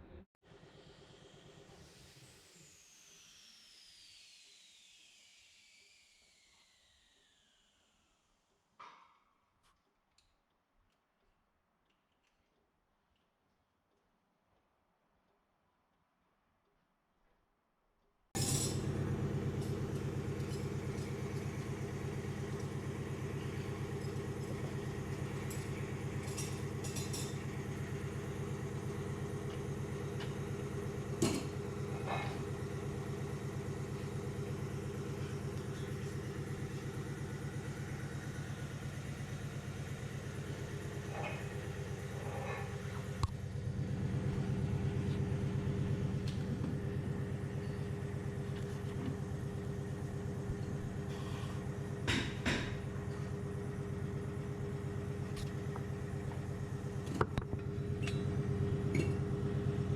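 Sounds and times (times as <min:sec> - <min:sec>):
car engine idling: 0:18.4 - 0:59.9.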